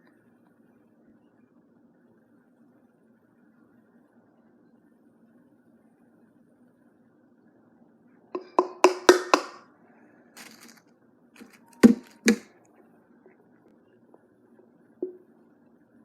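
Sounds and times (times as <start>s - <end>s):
knocks on a mixing bowl: 8.4s - 9.6s, 11.8s - 12.4s.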